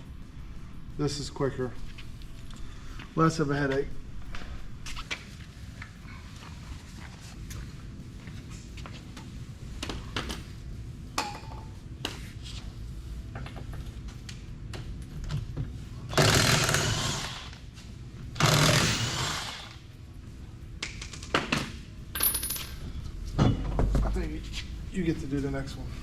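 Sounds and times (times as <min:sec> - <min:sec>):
impact wrench running: 0:16.1 - 0:17.6, 0:18.4 - 0:19.8.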